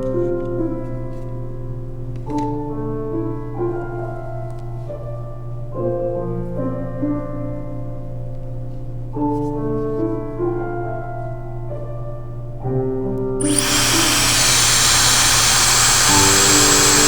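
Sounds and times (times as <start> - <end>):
hair dryer high whine: 13.4 - 17.0
hair dryer rushing air: 13.4 - 17.0.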